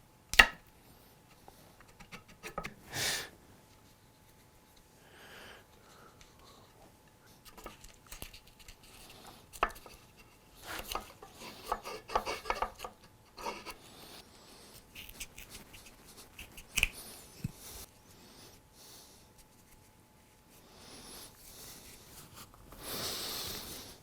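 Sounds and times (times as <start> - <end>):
scraping and rubbing wood: 10.6 - 13.8.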